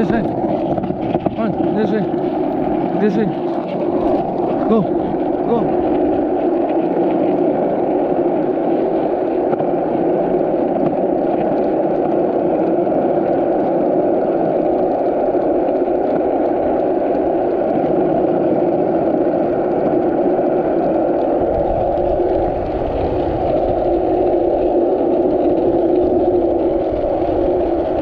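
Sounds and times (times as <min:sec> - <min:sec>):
dirt bike engine running: 0:00.0 - 0:06.5.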